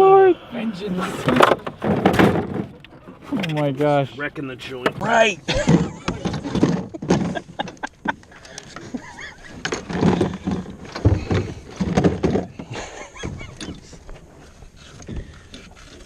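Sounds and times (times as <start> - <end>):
men's voices: 0.0 - 1.8, 3.0 - 6.8.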